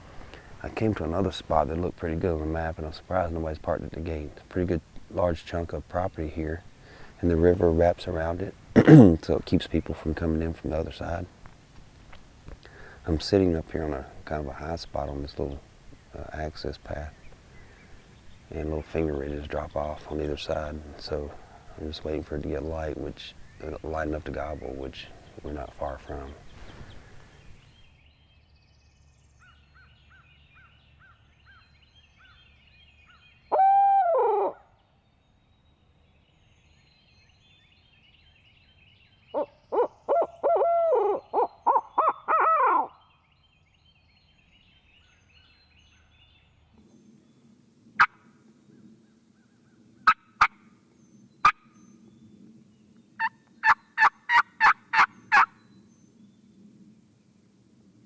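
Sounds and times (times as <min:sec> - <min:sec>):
faint songbird chirps: 0:12.1 - 0:58.0
owl hooting: 0:33.5 - 0:34.6, 0:39.4 - 0:43.0.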